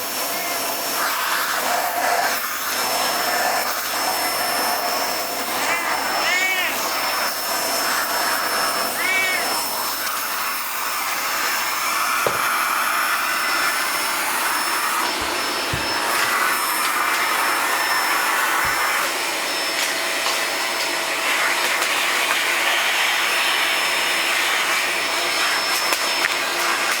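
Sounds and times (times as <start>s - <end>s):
vacuum cleaner running: 0.0s - 27.0s
cat meowing: 5.6s - 7.2s, 8.7s - 10.0s.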